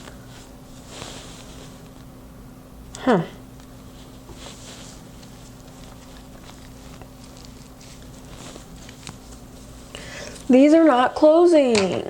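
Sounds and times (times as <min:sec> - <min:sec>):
hair rustling: 0:00.0 - 0:02.2, 0:03.6 - 0:11.1
steady low hum: 0:00.0 - 0:12.0.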